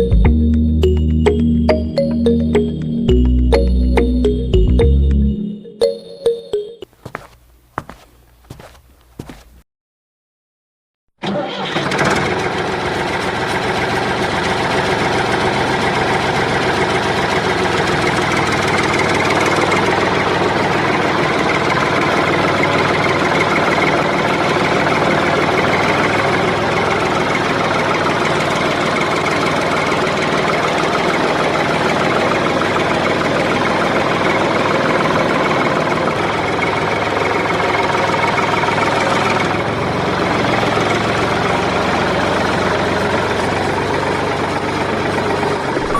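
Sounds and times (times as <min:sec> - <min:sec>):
engine running steadily: 0:11.9 - 0:45.9.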